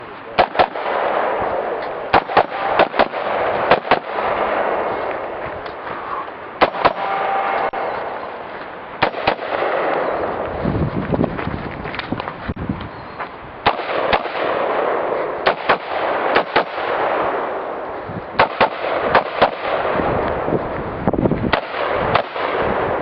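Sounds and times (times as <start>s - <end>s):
steady background rush: 0.0s - 23.0s
rifle gunshots: 0.4s - 8.2s, 9.0s - 10.4s, 13.6s - 20.5s, 21.5s - 23.0s.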